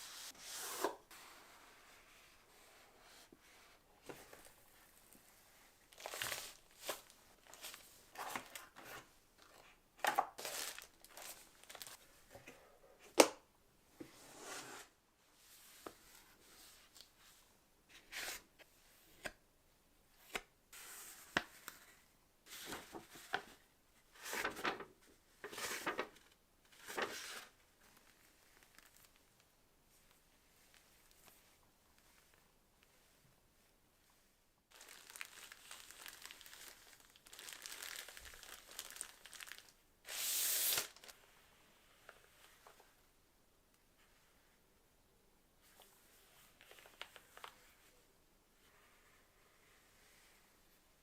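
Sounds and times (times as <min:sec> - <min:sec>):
packaging rustling and tearing: 0:05.9 - 0:08.8, 0:09.4 - 0:12.0, 0:34.7 - 0:41.1.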